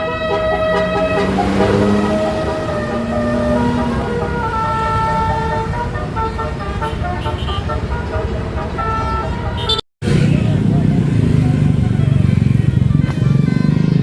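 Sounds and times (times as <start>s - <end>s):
musical air horn playing a tune: 0.0s - 8.0s, 8.6s - 9.8s
engine and road noise: 0.0s - 14.0s.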